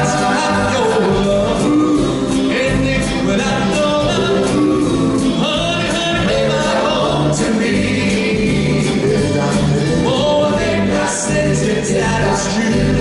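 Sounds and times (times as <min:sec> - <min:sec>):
live backing band: 0:00.0 - 0:13.0
vocal group singing in harmony: 0:00.0 - 0:13.0.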